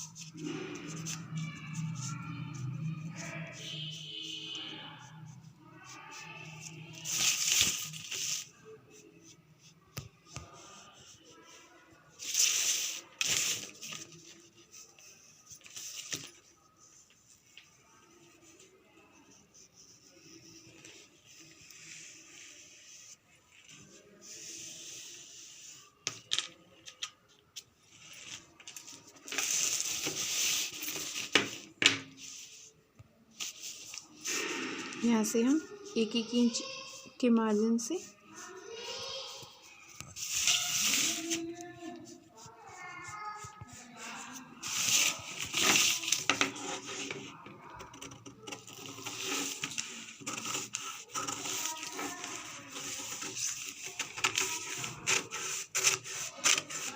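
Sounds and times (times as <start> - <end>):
paper rustling and scraping: 0.0 - 32.7, 33.3 - 37.1, 37.7 - 56.9
cloth rustling: 40.1 - 41.6.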